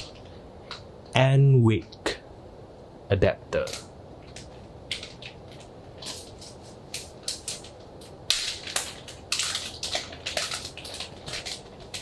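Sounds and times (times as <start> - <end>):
packaging crinkling and rustling: 3.6 - 12.0.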